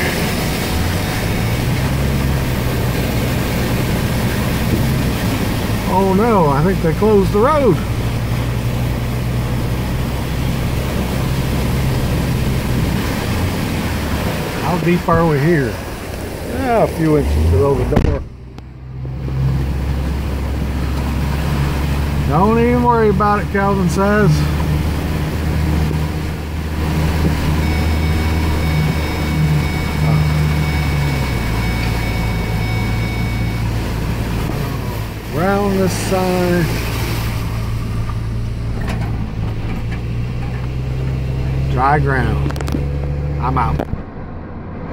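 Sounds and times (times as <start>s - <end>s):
water wash noise: 0.0s - 44.0s
truck engine running: 0.0s - 44.9s
high-pitched whine: 26.4s - 39.7s.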